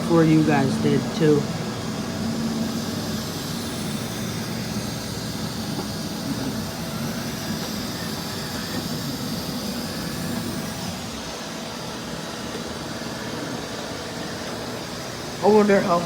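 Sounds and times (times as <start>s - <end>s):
robot vacuums whirring: 0.0s - 16.0s.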